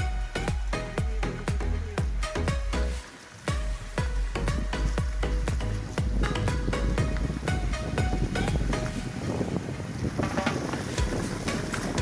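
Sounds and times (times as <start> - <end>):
four-on-the-floor kick drum: 0.0 - 2.8, 3.5 - 8.9
sustained synth notes: 0.0 - 9.5.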